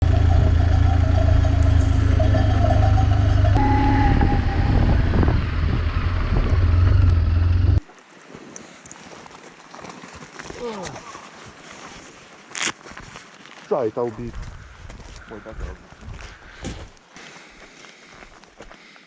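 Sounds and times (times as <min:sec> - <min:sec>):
motorcycle engine droning: 0:00.0 - 0:07.9.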